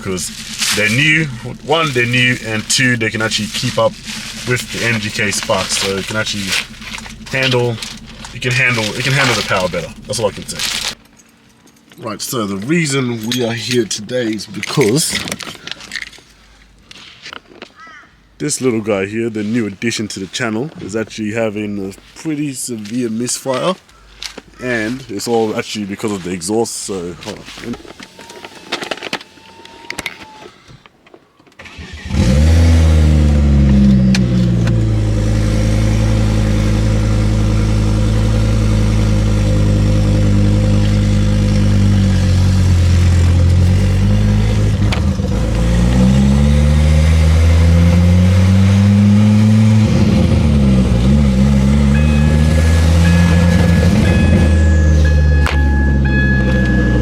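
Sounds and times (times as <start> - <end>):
misfiring car engine revving: 0.0 - 11.2, 31.6 - 57.0.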